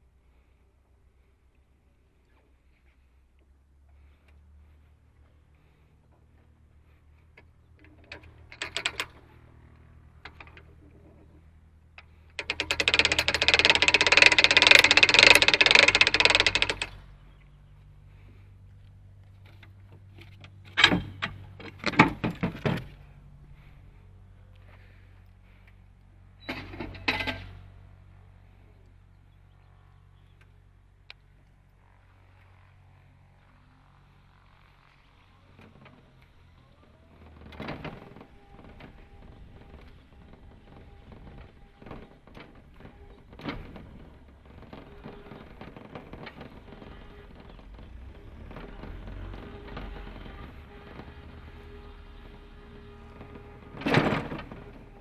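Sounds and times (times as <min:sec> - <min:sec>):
rapid mechanical clatter: 0:06.8 - 0:17.4, 0:19.4 - 0:24.0, 0:31.8 - 0:55.0
scattered clicks: 0:12.0 - 0:17.5.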